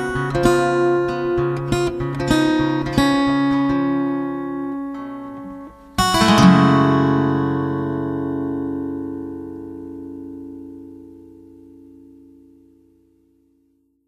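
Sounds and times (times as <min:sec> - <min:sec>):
strummed acoustic guitar: 0:00.0 - 0:13.2.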